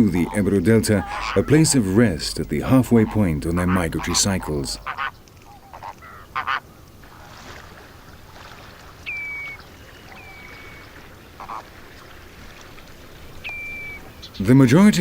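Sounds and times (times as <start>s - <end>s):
flamingos honking: 0.0s - 7.4s, 9.0s - 15.0s
whistled bird calls: 9.0s - 11.6s, 13.3s - 14.6s.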